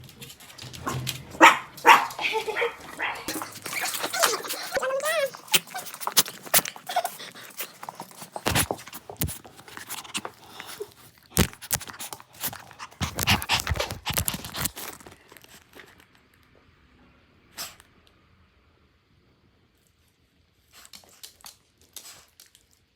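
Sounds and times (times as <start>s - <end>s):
quick clicks and rustles: 0.0s - 16.2s
small dog panting: 0.8s - 14.6s.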